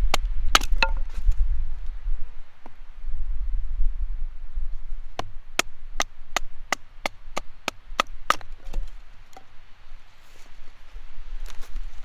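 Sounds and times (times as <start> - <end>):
knife chopping wood: 0.0 - 1.3, 5.1 - 9.5.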